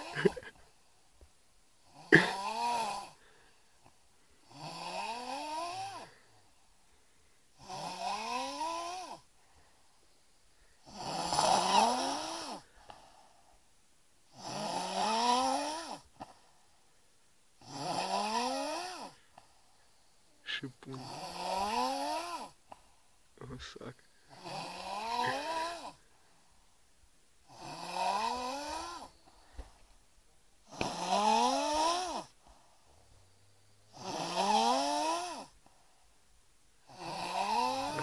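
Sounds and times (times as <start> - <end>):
man snoring heavily: 0.0 - 0.6, 1.8 - 3.6, 4.4 - 6.4, 7.5 - 9.3, 10.8 - 13.0, 14.3 - 16.4, 17.6 - 19.4, 20.4 - 22.7, 24.3 - 26.1, 27.4 - 29.6, 30.6 - 32.4, 33.8 - 35.8, 36.8 - 38.0
quiet breathing: 3.0 - 7.6, 8.8 - 14.4, 16.0 - 17.6, 18.8 - 34.0, 34.6 - 38.0.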